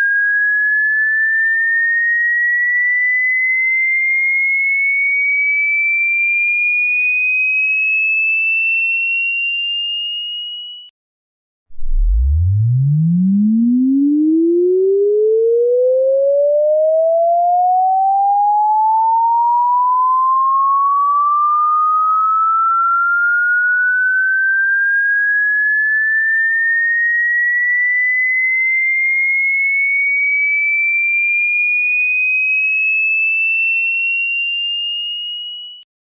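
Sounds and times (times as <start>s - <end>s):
rising sine-wave tone: 11.7s - 26.6s.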